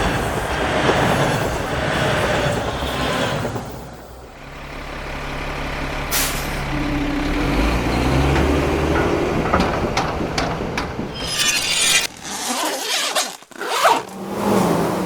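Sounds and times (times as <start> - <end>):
heavy vehicle engine running: 3.7 - 11.1.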